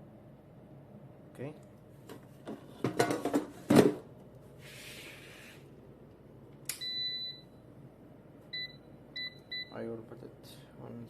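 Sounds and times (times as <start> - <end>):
oven control panel beep: 6.7 - 7.6, 8.5 - 9.9.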